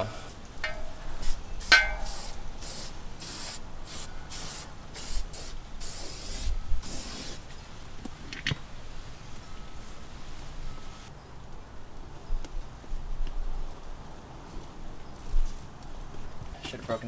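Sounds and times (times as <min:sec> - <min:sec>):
spray hissing bursts: 0:00.0 - 0:07.4
metallic clink: 0:00.6 - 0:04.7.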